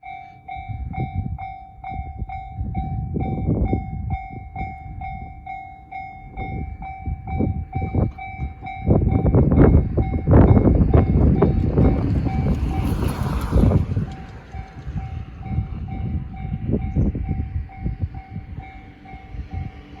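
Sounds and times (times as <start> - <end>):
train passing rumble: 0.0 - 20.0
train wheels clacking over rail joints: 8.0 - 20.0.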